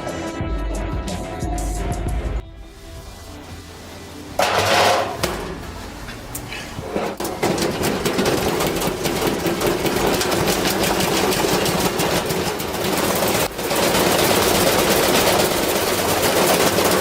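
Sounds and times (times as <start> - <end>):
engine running with rough clatter: 4.4 - 17.0.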